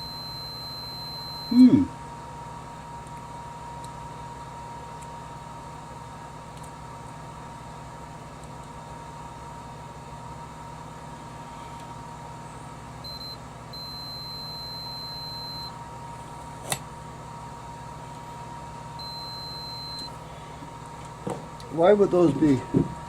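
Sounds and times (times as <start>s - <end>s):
multimeter continuity beeping: 0.0s - 1.6s, 13.0s - 15.8s, 19.0s - 20.1s
faint whine: 0.0s - 2.0s, 13.0s - 15.8s, 19.0s - 20.6s
steady background hum: 0.0s - 23.0s.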